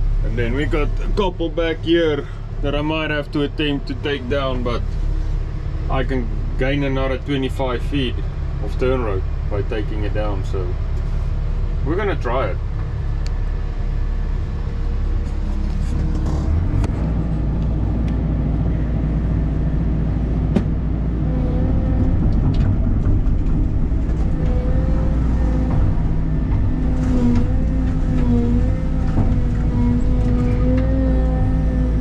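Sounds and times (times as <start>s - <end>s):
excavator diesel engine running: 0.0s - 32.0s
steady whining tone: 0.0s - 32.0s
sharp clicks and knocks: 20.5s - 20.8s, 21.9s - 31.0s.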